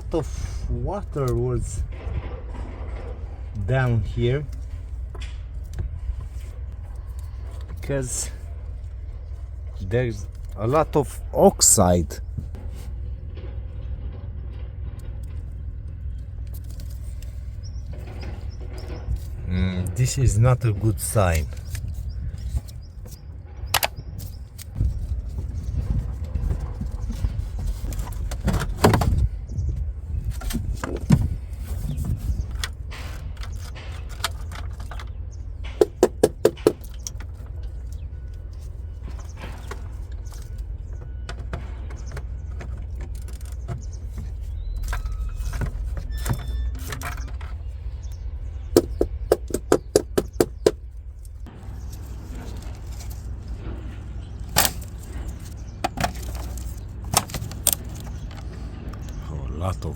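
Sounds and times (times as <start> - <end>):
sharp clicks and rattles: 30.3 - 59.3.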